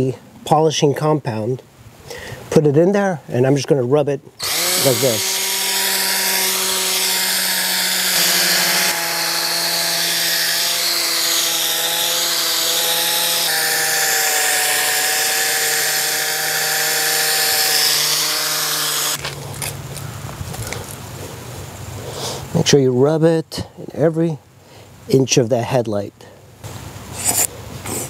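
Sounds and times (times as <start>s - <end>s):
power drill motor whine: 4.4s - 19.2s.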